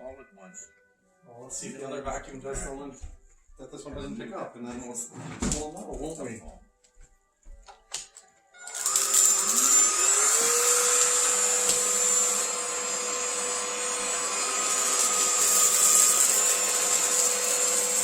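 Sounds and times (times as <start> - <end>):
vacuum cleaner motor whining: 8.6 - 18.0.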